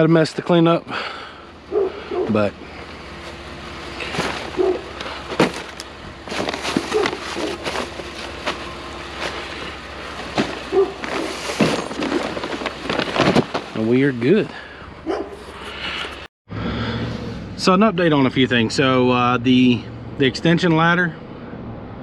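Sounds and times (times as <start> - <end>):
scrap debris clattering and rustling: 2.3 - 14.7.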